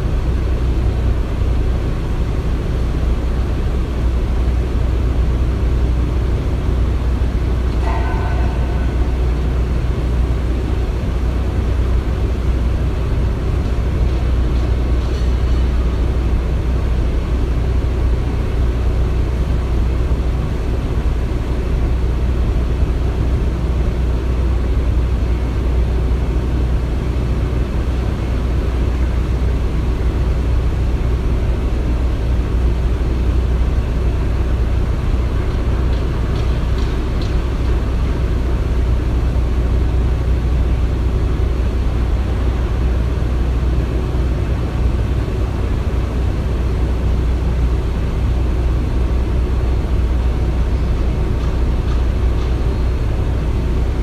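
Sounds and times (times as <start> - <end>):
construction machinery rumble: 0.0 - 54.0.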